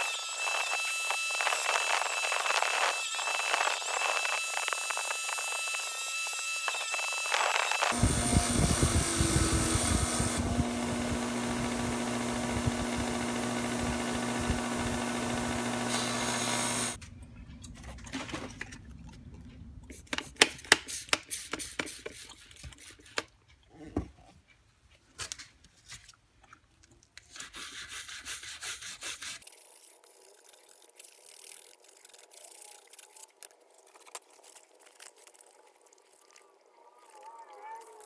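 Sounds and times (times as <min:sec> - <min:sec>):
power tool humming: 0:00.0 - 0:17.0.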